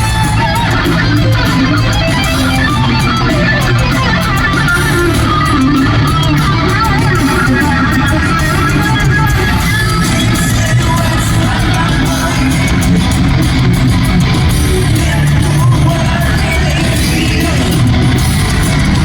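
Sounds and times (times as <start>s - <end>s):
bass and drums: 0.0s - 19.0s
distorted electric guitars: 0.0s - 19.0s.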